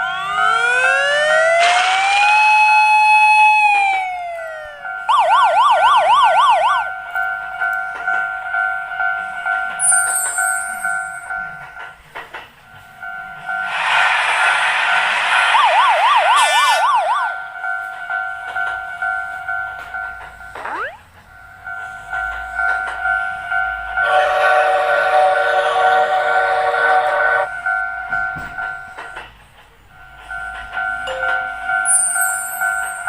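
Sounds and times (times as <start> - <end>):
falling siren-like glide: 0.0 - 7.0, 13.6 - 17.5, 20.6 - 21.0
railroad crossing warning bell: 0.0 - 33.0
rushing noise: 1.4 - 2.8, 13.6 - 17.1
rapid warbling tones: 20.7 - 21.0.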